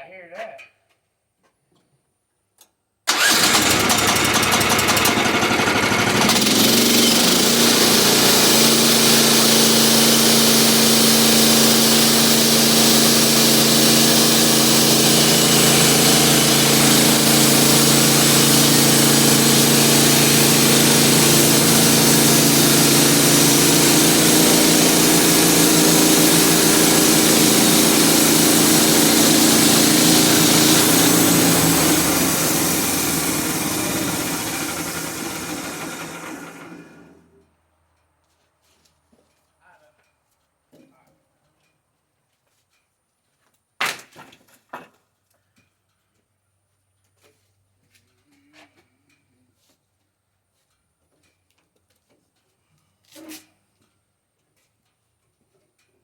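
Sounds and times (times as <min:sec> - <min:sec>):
sawmill engine running: 0:03.1 - 0:37.3.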